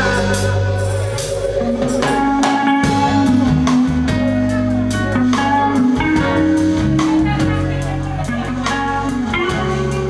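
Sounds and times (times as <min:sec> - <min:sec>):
drum hits: 0:00.0 - 0:04.6
reggae band playing: 0:00.0 - 0:10.0
sustained bass line: 0:00.0 - 0:10.0.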